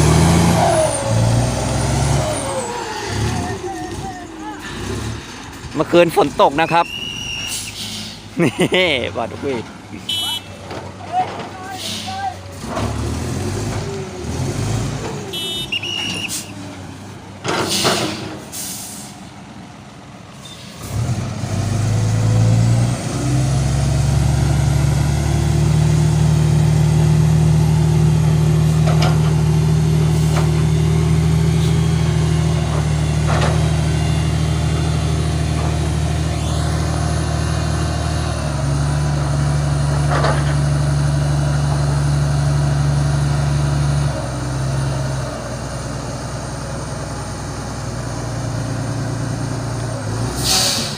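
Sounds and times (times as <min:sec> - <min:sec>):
diesel truck engine droning: 0:00.0 - 0:50.9
short air hisses: 0:07.4 - 0:08.3, 0:17.7 - 0:19.2, 0:50.4 - 0:50.9.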